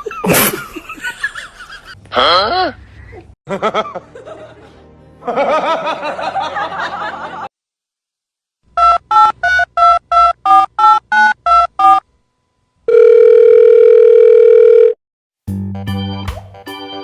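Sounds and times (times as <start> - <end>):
steady telephone tone: 12.9 - 15.0.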